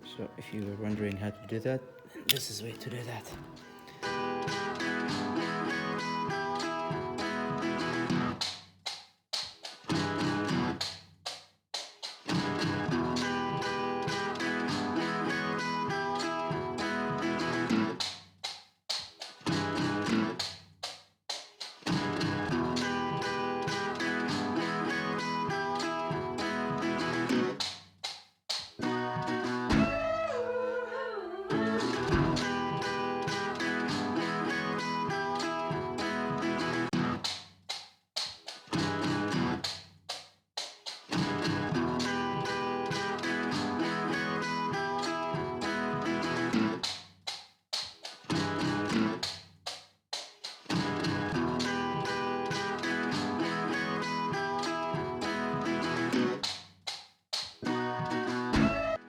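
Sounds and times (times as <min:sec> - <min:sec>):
guitar music: 0:00.0 - 0:08.4, 0:12.4 - 0:18.0, 0:32.0 - 0:37.2, 0:41.2 - 0:46.8, 0:50.8 - 0:56.4, 0:57.6 - 0:59.0.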